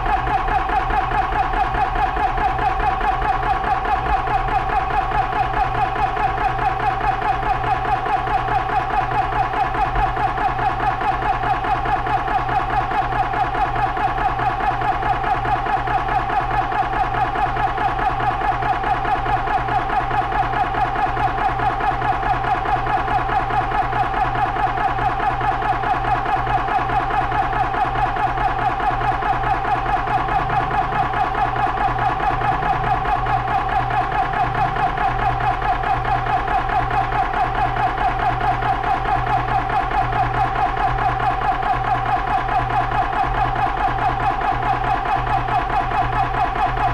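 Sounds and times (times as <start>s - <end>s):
air compressor pulsing hum: 0.0s - 46.9s.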